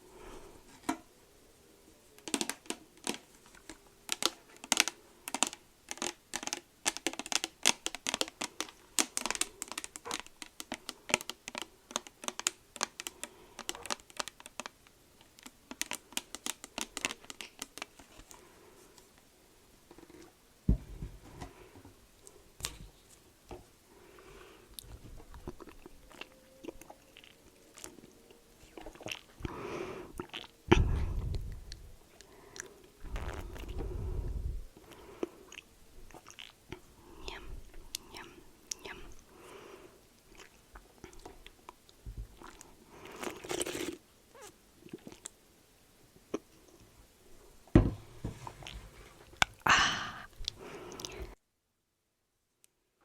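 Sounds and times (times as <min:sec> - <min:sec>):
sharp crisp clicks and crunches: 0:02.1 - 0:19.2.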